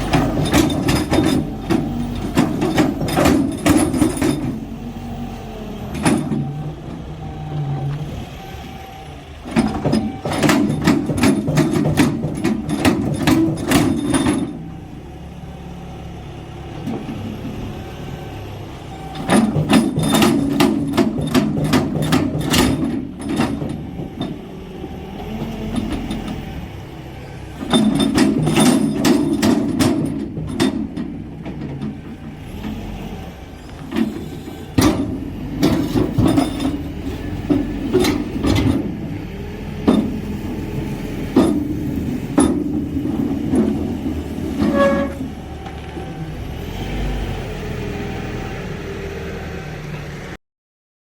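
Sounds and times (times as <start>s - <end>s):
engine running: 0.0s - 50.4s
rapid sharp knocks and clanks: 9.6s - 14.6s.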